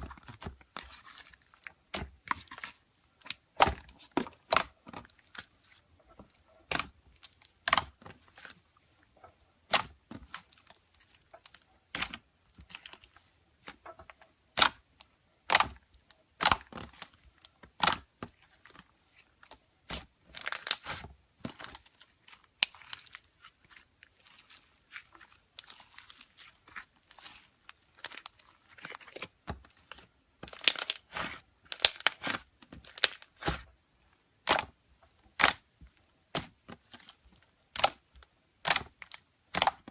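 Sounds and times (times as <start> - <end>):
slime popping and crackling: 34.4 - 35.7, 37.7 - 39.9.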